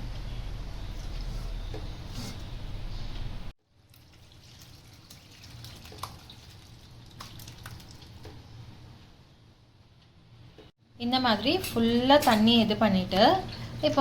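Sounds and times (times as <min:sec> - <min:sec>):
liquid pouring through cloth: 0:03.8 - 0:08.2
drips and small plops: 0:03.8 - 0:08.4.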